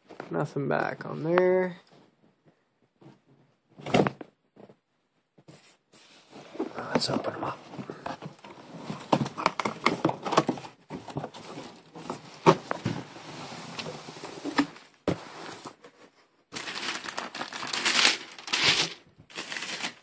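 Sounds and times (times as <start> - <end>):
box clicks and knocks: 8.0 - 11.8
packing wrap crinkling and rustling: 16.5 - 20.0.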